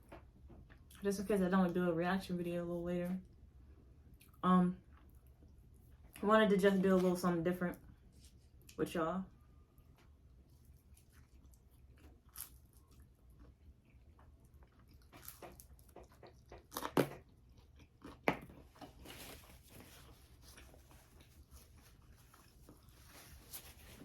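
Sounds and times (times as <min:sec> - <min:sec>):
person chewing and crunching food: 0:10.0 - 0:24.0.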